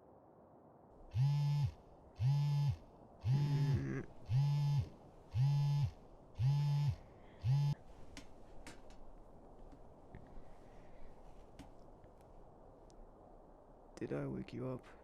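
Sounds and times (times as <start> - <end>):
faint rain hiss: 0.9 - 15.0
phone vibrating buzzes: 1.1 - 7.8.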